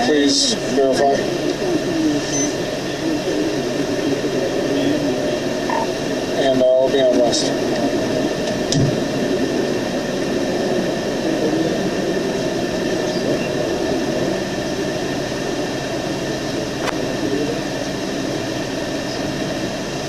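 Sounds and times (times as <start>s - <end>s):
steady low rushing noise: 0.0s - 20.0s.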